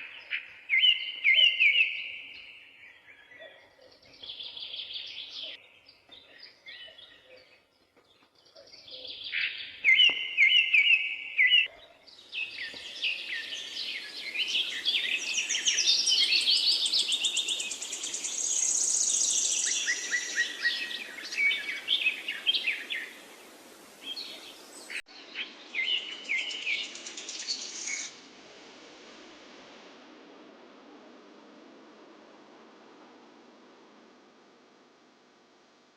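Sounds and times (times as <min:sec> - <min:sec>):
birds chirping and singing: 0:00.0 - 0:28.1
steady background hiss: 0:00.0 - 0:35.9.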